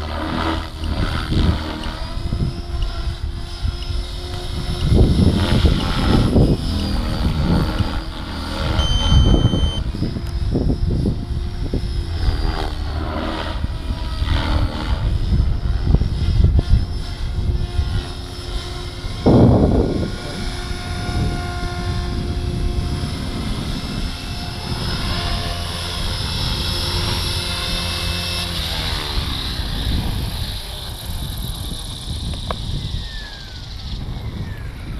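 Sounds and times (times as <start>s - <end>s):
rc helicopter rotor whine: 0.0s - 34.9s
wind on microphone: 0.0s - 34.9s.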